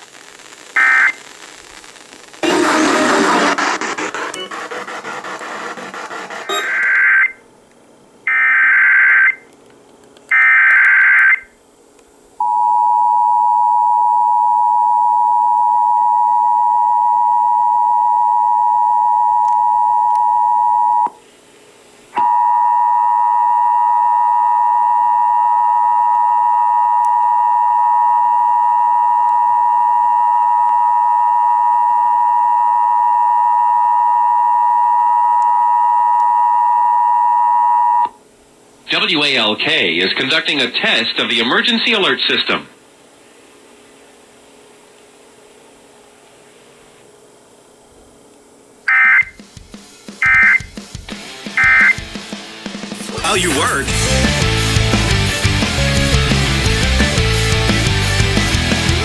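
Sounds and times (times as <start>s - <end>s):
warbling data bursts: 0.5s - 7.4s
two-tone attention signal: 2.4s - 5.3s, 6.4s - 7.4s, 50.2s - 50.7s, 51.6s - 52.0s.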